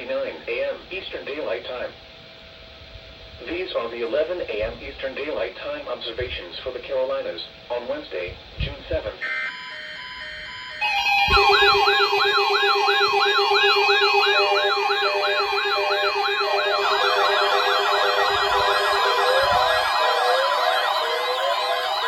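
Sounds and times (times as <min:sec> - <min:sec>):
pulsing buzz: 0:09.2 - 0:22.0
steady alarm tone: 0:09.2 - 0:22.0
warbling siren-like alarm tones: 0:09.2 - 0:22.0.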